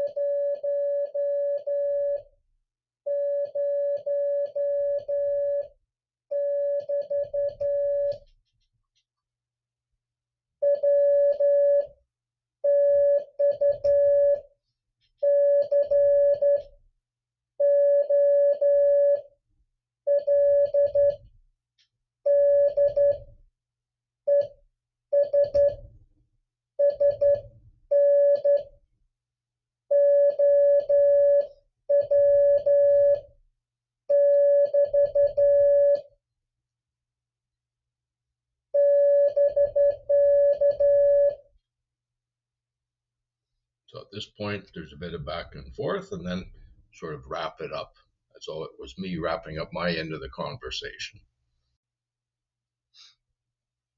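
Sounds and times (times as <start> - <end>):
morse code beeps: 34.1 - 36.1, 38.8 - 41.4.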